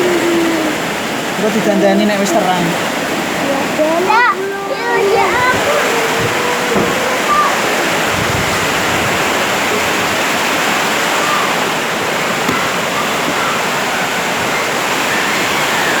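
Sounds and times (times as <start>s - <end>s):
loud storm wind rushing: 4.7s - 13.5s.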